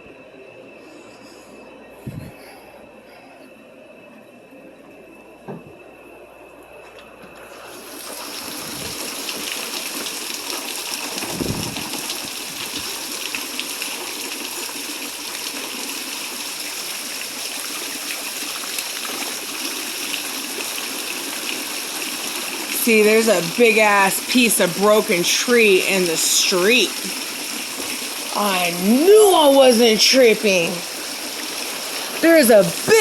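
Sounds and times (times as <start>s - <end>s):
heavy rain pouring: 7.7s - 33.0s.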